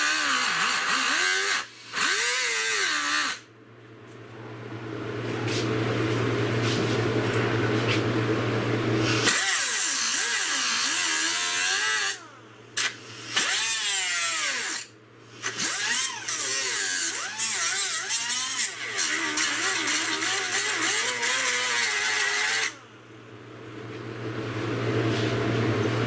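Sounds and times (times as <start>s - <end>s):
rotary tool grinding metal: 9.1s - 12.2s, 13.2s - 22.8s.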